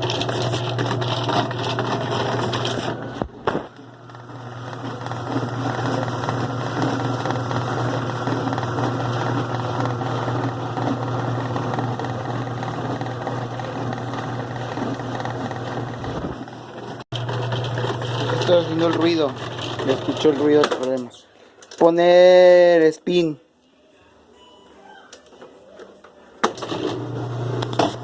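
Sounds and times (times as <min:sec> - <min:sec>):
washing machine motor hum: 0:00.0 - 0:20.7, 0:26.4 - 0:28.0
rough mechanical noise: 0:00.0 - 0:21.1.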